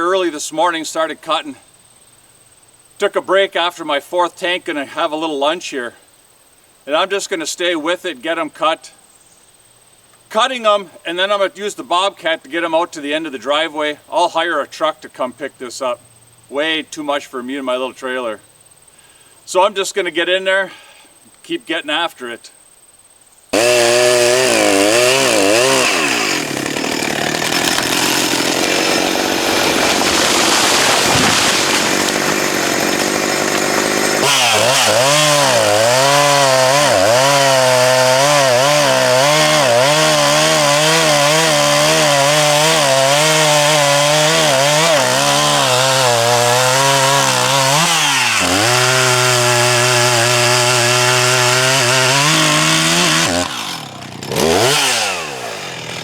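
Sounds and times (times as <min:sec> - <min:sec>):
chainsaw cutting wood: 0:23.5 - 0:56.0.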